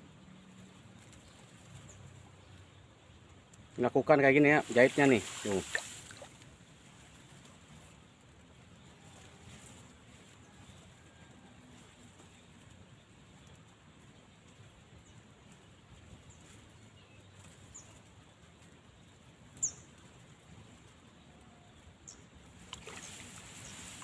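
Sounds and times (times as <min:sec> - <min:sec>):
faint low outdoor hum: 0:00.0 - 0:24.0
small birds chirping: 0:12.1 - 0:24.0.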